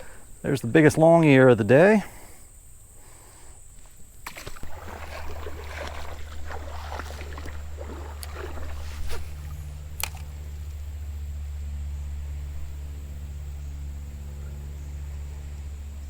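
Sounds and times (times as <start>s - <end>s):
water sloshing and splashing: 3.8s - 10.6s
steady low rumble: 4.6s - 16.0s
sharp click: 10.0s - 10.3s.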